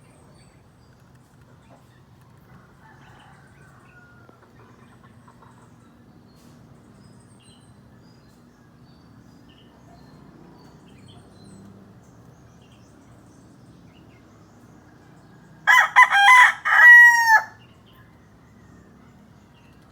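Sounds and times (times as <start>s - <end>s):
rooster crowing: 2.6s - 4.3s, 15.6s - 17.6s.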